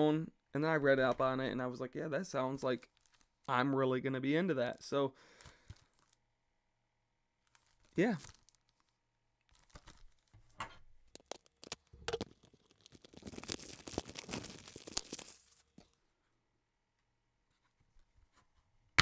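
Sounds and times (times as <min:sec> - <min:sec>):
plastic wrap tearing and crackling: 0:05.8 - 0:06.2, 0:07.4 - 0:10.4, 0:11.1 - 0:15.8.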